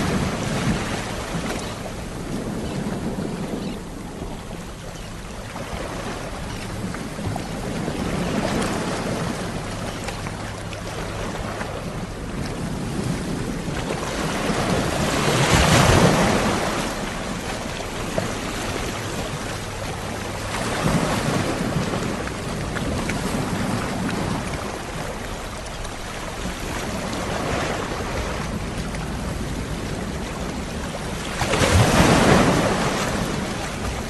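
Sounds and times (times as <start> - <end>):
sea waves breaking on shore: 0.0 - 34.0.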